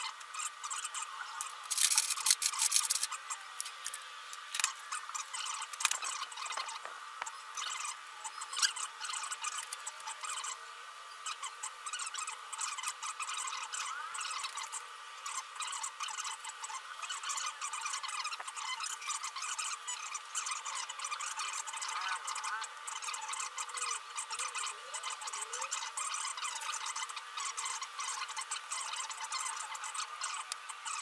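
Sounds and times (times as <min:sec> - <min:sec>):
hand tools on metal parts: 0:01.4 - 0:06.9.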